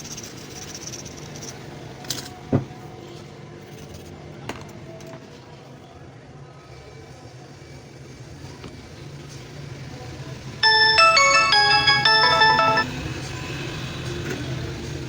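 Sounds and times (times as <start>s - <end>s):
electronic chime melody: 10.6s - 12.9s.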